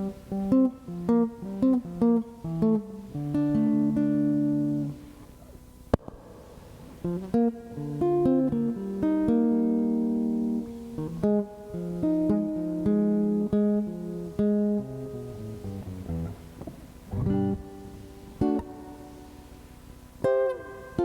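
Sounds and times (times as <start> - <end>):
plucked guitar melody: 0.0 - 21.0.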